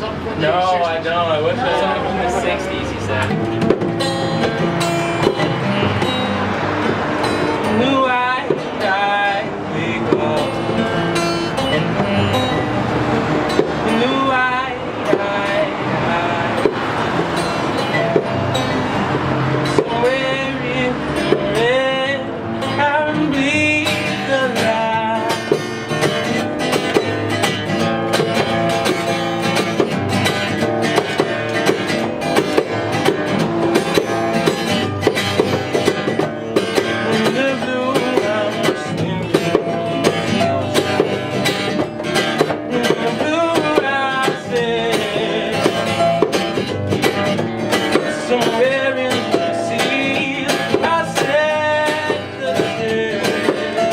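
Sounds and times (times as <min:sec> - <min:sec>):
acoustic guitars strumming: 0:00.0 - 0:53.9
person singing: 0:36.9 - 0:40.7.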